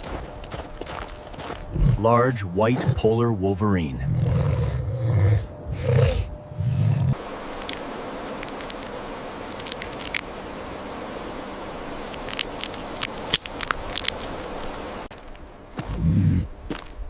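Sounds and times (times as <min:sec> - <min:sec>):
steady hiss: 0:06.8 - 0:16.8
sharp clicks and crackles: 0:07.5 - 0:10.3, 0:12.0 - 0:14.8.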